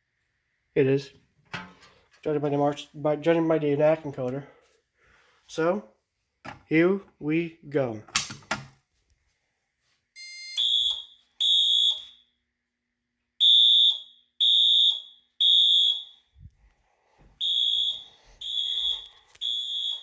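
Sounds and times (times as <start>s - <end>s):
fire alarm horn blasts: 10.2s - 12.4s, 13.4s - 16.5s, 17.4s - 20.0s.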